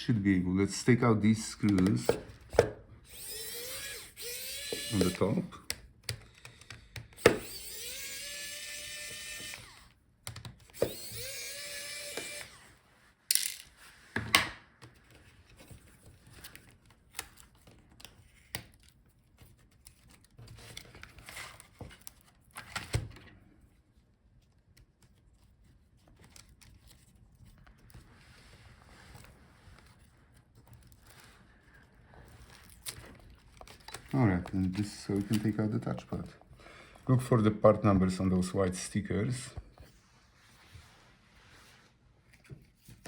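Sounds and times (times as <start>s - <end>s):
screws and small parts clicking: 1.6s - 12.6s
electric screwdriver whine: 3.1s - 5.4s, 7.2s - 10.0s, 10.7s - 12.8s.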